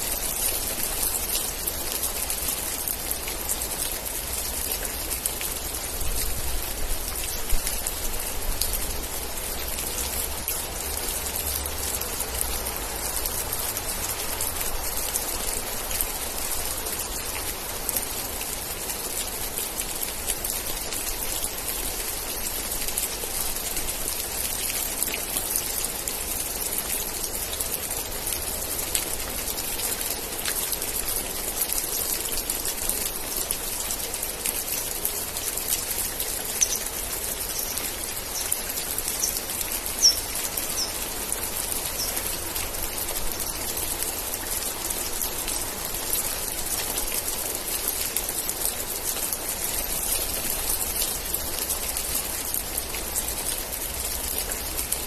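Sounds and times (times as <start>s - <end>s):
heavy rain drops ticking: 0.0s - 55.0s.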